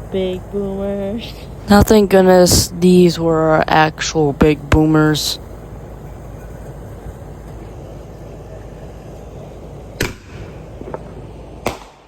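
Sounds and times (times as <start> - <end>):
outdoor background rumble: 0.0 - 12.0
firework bang: 9.9 - 12.0.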